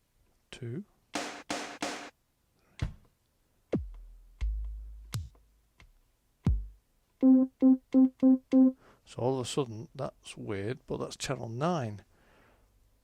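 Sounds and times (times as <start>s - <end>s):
electronic kick drums booming: 3.8s - 5.3s, 6.5s - 6.8s.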